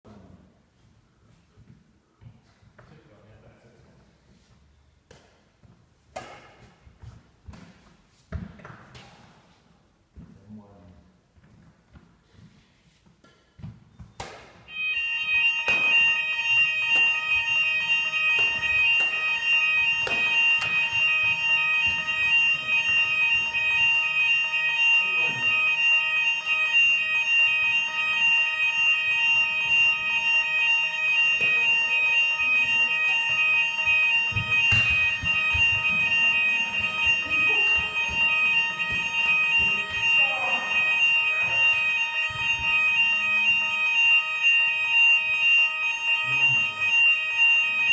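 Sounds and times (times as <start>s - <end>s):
fire alarm high-pitched fluttering tone: 14.7s - 47.9s.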